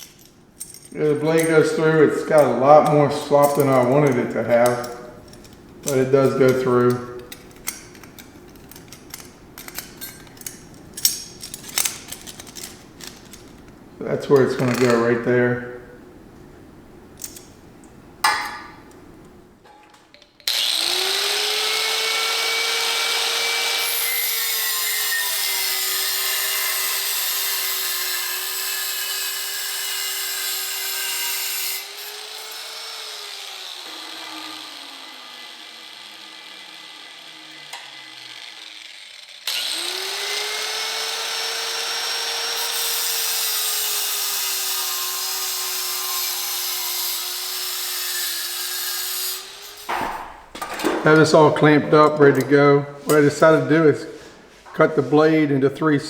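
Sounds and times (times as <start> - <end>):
rotary tool whine: 20.4 - 49.9
cutoff wheel grinding steel: 20.4 - 50.4.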